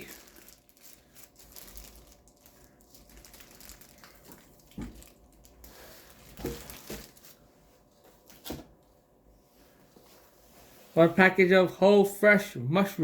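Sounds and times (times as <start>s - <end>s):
plastic packaging crinkling: 0.0s - 7.5s.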